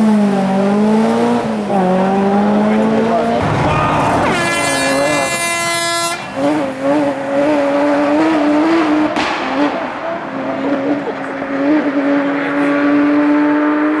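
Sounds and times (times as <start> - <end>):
rally car engine at high revs: 0.0 - 14.0
sharp crack: 3.4 - 6.4, 9.1 - 10.1.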